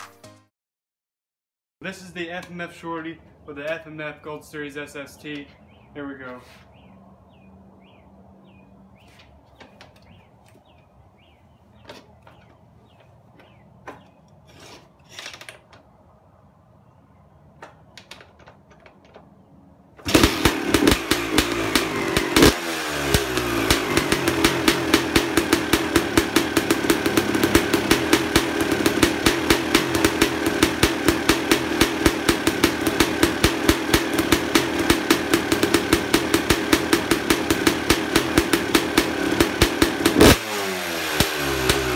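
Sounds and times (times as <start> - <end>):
motorcycle engine starting and idling: 19.9 - 41.9.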